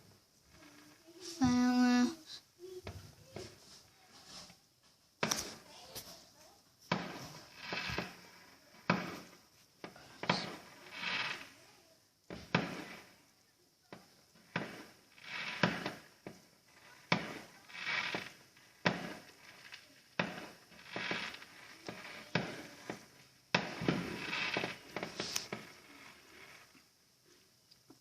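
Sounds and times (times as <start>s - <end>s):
firework crackling: 0.0s - 28.0s
firework bangs: 5.2s - 27.0s.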